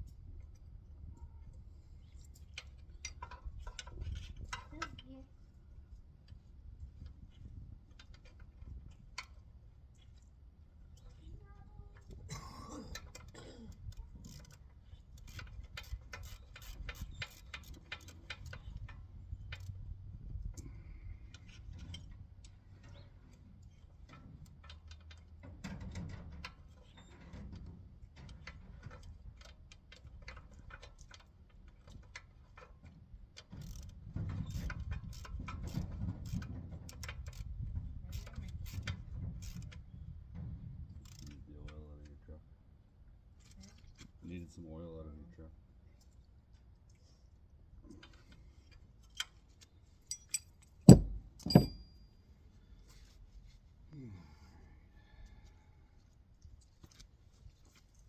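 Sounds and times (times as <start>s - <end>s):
low knocks and rumble: 50.9s - 51.8s.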